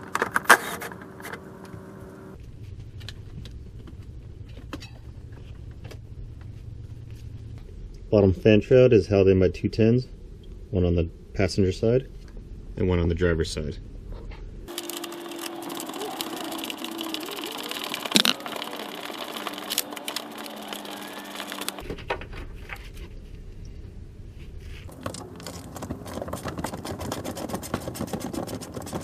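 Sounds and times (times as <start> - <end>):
power tool whirring: 14.7 - 21.8.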